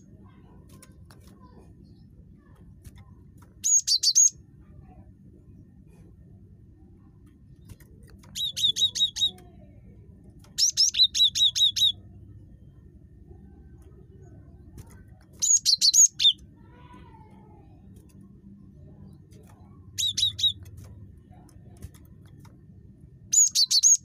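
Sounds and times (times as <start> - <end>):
faint steady low rumble: 0.0 - 24.0
bird singing high sharp notes: 8.3 - 9.4, 15.4 - 16.4, 20.0 - 20.7, 23.3 - 24.0.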